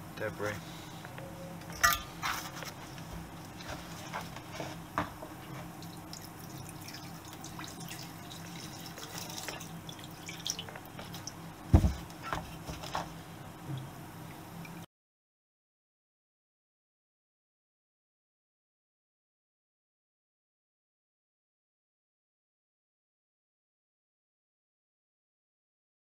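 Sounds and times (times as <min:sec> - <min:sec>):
dull knock: 0:11.7 - 0:12.0.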